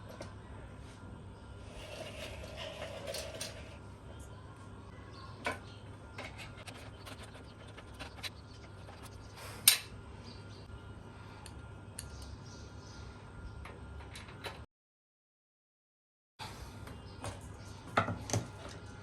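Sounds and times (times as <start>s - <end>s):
steady low hum: 0.0s - 14.7s.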